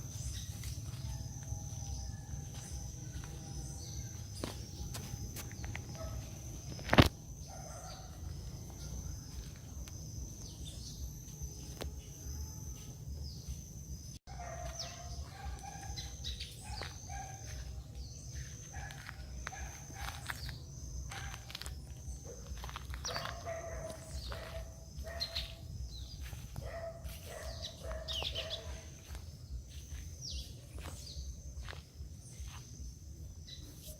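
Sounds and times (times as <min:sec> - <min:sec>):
high insect drone: 0:00.0 - 0:33.9
birds chirping and calling: 0:14.3 - 0:32.6.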